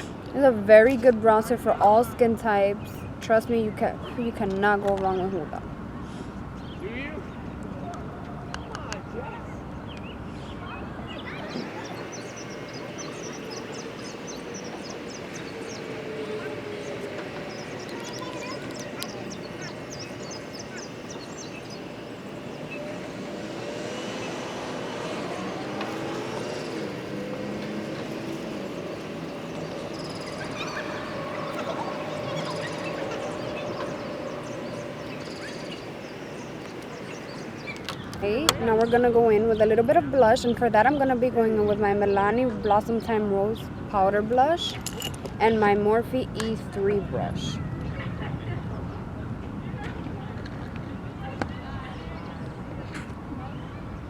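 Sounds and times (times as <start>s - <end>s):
small birds chirping: 6.6s - 48.0s
low wash of noise: 9.6s - 39.6s
faint steady hum: 9.7s - 47.6s
faint low drone: 11.3s - 37.8s
steady rushing background: 11.3s - 38.2s.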